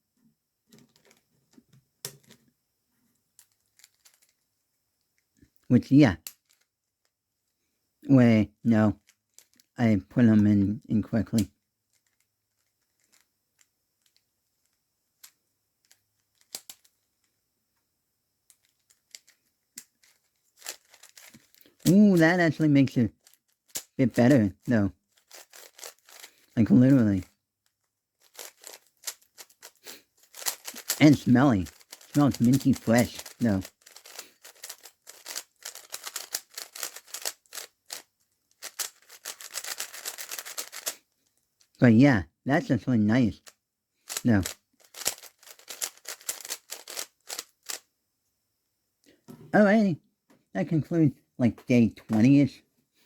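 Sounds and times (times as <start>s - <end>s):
plastic clicks of speed cube: 3.4s - 4.4s, 11.4s - 17.4s, 28.2s - 31.0s, 31.7s - 41.0s, 44.1s - 47.8s.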